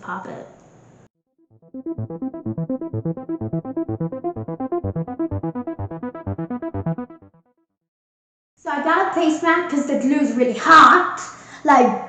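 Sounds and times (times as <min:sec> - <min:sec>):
bouncy keyboard tune with beat: 0:01.5 - 0:07.5.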